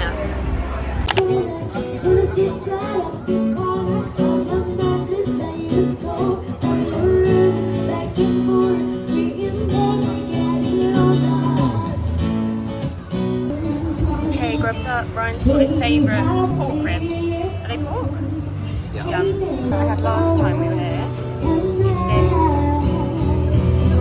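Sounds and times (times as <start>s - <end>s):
acoustic guitar strumming: 0.0s - 24.0s
person singing: 1.1s - 12.2s, 19.1s - 24.0s.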